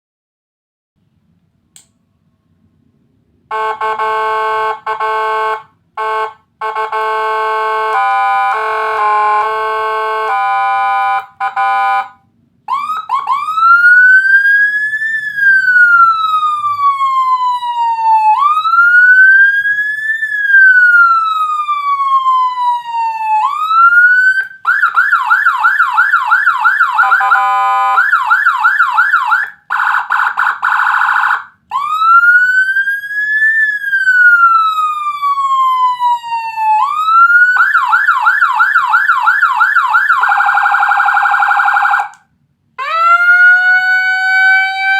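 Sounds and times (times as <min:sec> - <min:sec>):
police siren wail: 0:03.5 - 0:12.1, 0:12.7 - 0:42.2, 0:42.8 - 0:44.9
police siren yelp: 0:03.5 - 0:42.2, 0:42.8 - 0:44.9.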